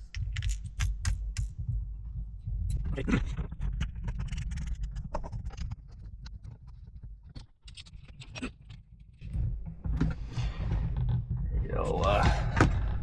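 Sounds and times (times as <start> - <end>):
small parts clicking and tapping: 0.0 - 1.6.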